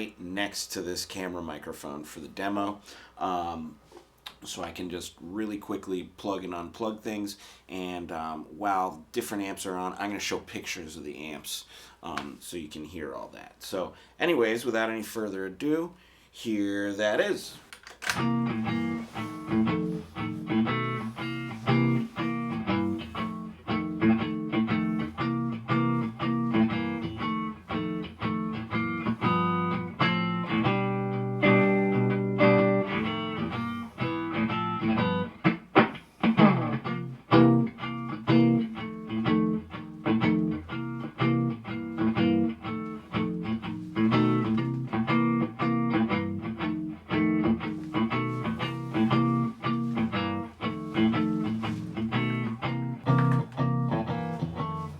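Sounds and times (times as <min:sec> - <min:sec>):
electric guitar playing: 0:18.1 - 0:54.9.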